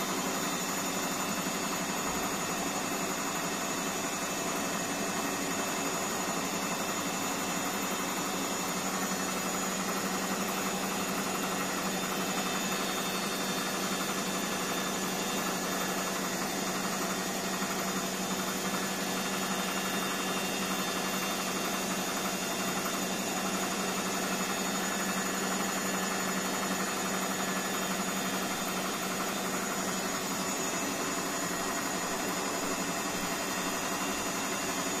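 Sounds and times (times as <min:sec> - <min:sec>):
washing machine spinning: 0:00.0 - 0:35.0.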